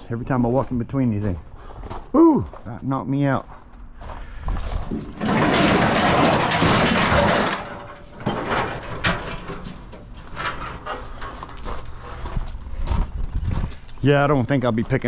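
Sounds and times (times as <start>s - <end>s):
scrap metal scraping: 4.7s - 13.0s
metal knocks and clanks: 4.8s - 12.4s.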